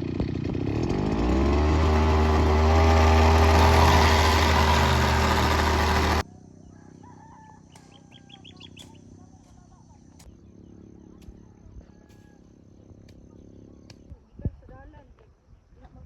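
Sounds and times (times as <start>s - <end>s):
brush cutter engine running: 0.0s - 6.2s
faint bird chirps: 6.6s - 12.4s.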